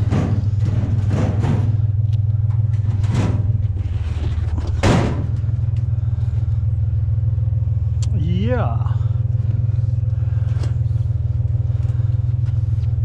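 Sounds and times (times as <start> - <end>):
sharp knocks: 0.0 - 1.8
truck engine idling: 0.0 - 13.0.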